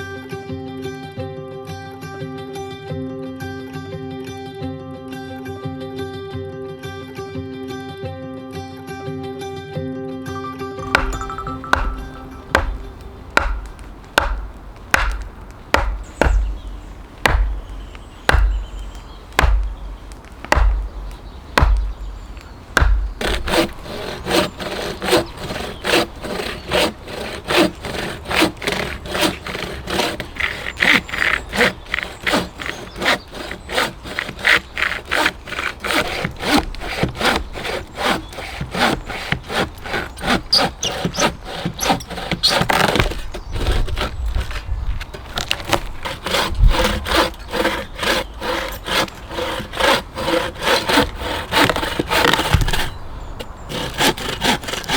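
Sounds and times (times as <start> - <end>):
hand saw cutting a log: 10.8 - 54.9
heavy thuds on wood: 10.9 - 26.4, 38.4 - 53.0.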